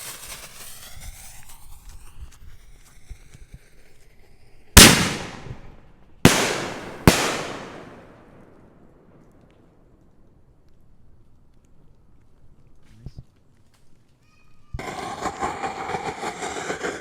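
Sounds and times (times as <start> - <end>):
firework fizzing: 0.0 - 2.1, 4.8 - 5.7, 6.3 - 9.1, 14.8 - 17.0
loud firework bangs echoing: 4.8 - 5.7, 6.3 - 9.2.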